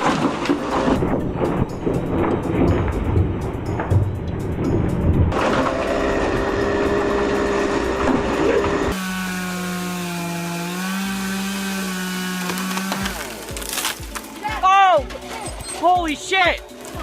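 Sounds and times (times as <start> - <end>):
chainsaw cutting wood: 5.4 - 14.3.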